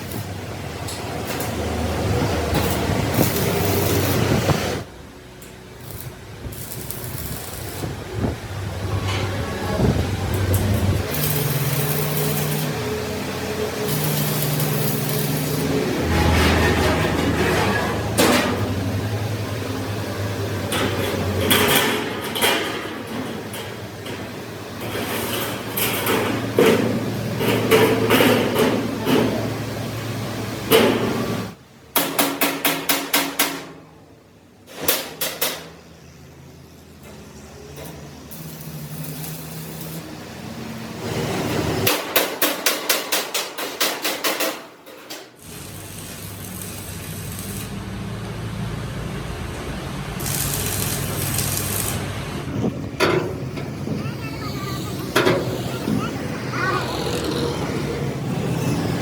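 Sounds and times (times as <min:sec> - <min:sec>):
workshop machinery humming: 0:00.0 - 0:31.9, 0:33.7 - 0:42.2, 0:45.2 - 0:59.0
machine hiss: 0:10.8 - 0:15.8, 0:50.2 - 0:52.3
hammer striking sheet steel: 0:32.0 - 0:33.8, 0:41.9 - 0:45.0.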